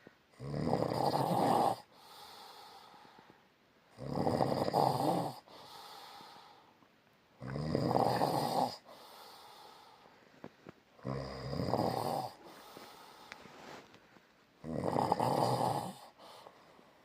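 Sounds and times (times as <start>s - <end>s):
loud rattling snores: 0.4s - 2.9s, 3.9s - 6.3s, 7.4s - 9.8s, 11.0s - 13.2s, 14.6s - 16.4s
quiet breathing: 1.6s - 4.0s, 4.8s - 17.0s.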